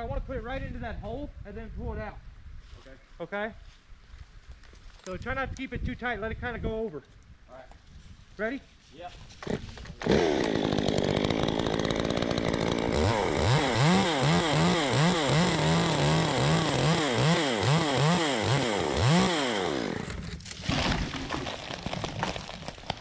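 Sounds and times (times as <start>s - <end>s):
chainsaw cutting wood: 9.4s - 23.0s.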